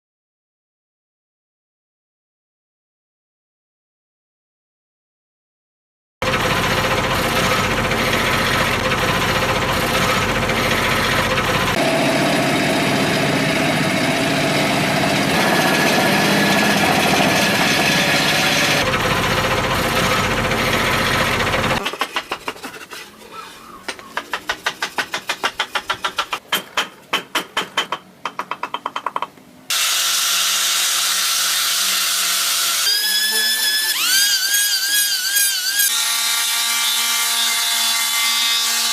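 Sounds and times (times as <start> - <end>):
tool whine spinning up: 6.2 - 21.8, 29.7 - 35.9
power tool grinding wood: 6.2 - 23.4, 29.7 - 38.9.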